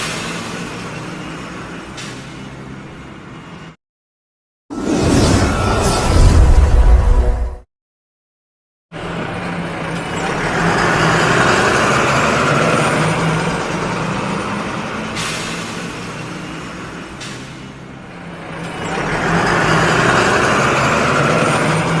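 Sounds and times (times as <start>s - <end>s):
bus engine humming: 9.0s - 22.0s.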